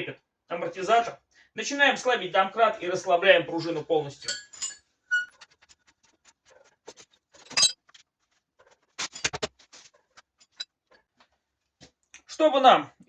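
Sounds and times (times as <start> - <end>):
metal tools clicking and clanking: 4.2 - 5.2, 7.4 - 7.8
metallic ring: 4.3 - 5.2, 7.5 - 7.8.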